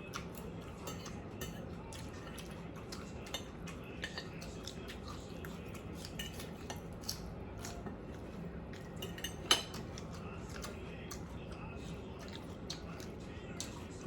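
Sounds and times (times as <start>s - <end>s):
cutlery clinking on plates: 0.8s - 4.5s, 6.0s - 7.9s, 8.8s - 10.6s.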